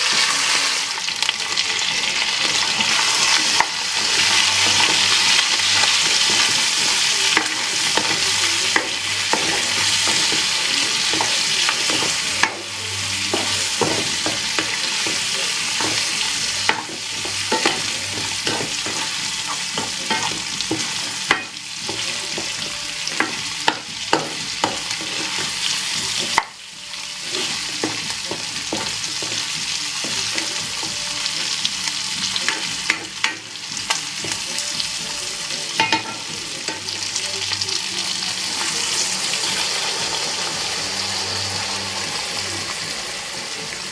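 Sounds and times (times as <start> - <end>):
food sizzling in oil: 0.0 - 43.9
spatula scraping a pan: 2.5 - 26.4.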